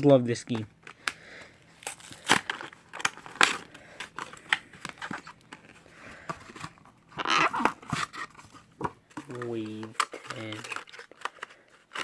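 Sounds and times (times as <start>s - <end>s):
packaging crackling and clicking: 1.8s - 5.8s, 9.1s - 12.0s.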